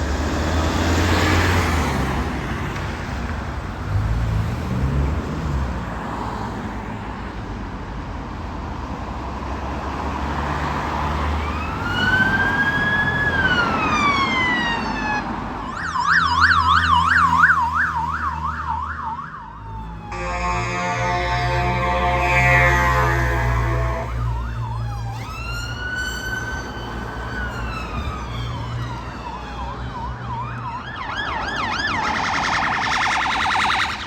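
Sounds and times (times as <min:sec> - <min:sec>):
road traffic noise: 0:00.0 - 0:34.0
emergency siren wail and yelp: 0:11.0 - 0:34.0.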